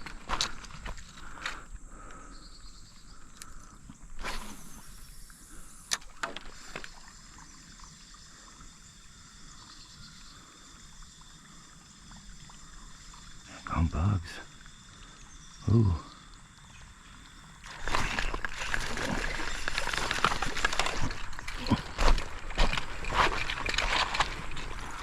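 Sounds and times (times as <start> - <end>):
moving water: 0.0 - 25.0
splashing steps in water: 17.6 - 25.0.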